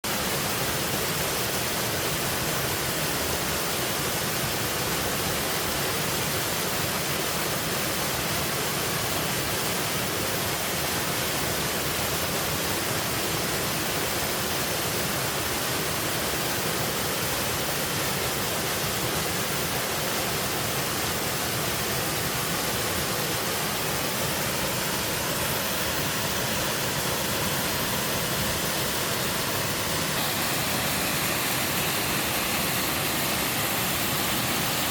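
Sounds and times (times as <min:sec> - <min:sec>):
waterfall pouring: 0:00.1 - 0:34.9.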